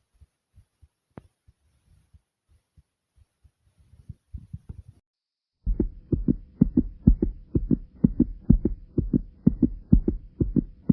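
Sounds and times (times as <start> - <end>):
faint steady hum: 5.7 - 10.9
heartbeat thumps: 5.7 - 10.9.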